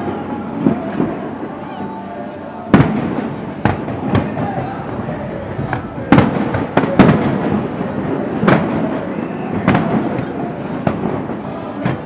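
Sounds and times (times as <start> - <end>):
fireworks bangs with rumbling echo: 0.0 - 12.0.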